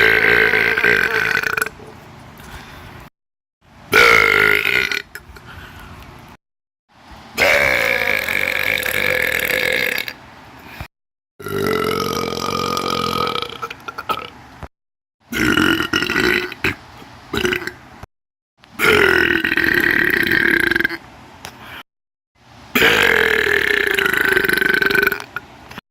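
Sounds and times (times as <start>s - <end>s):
long human burps: 0.0s - 1.8s, 11.4s - 14.3s, 15.3s - 16.8s, 17.4s - 17.8s, 18.8s - 21.0s, 22.8s - 25.5s.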